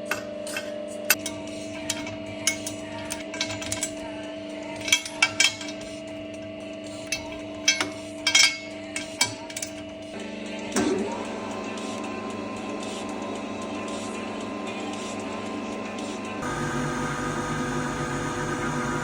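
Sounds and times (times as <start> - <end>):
electric machine hum: 16.4 - 19.0.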